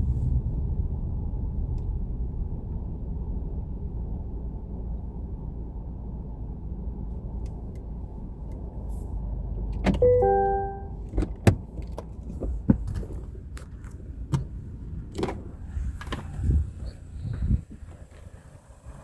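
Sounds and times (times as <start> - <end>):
car rumbling: 0.0 - 19.0
electronic chime: 10.0 - 11.0.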